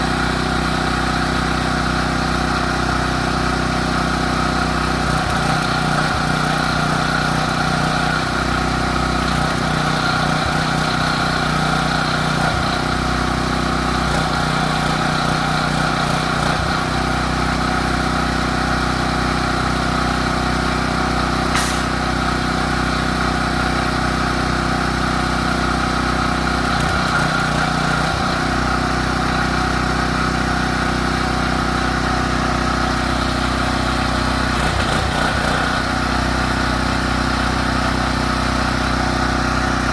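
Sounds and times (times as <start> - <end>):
sharp click: 21.5 - 22.0.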